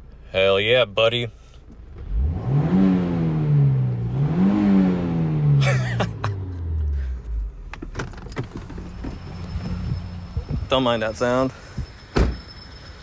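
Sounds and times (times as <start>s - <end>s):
car engine revving and idling: 1.7s - 11.9s.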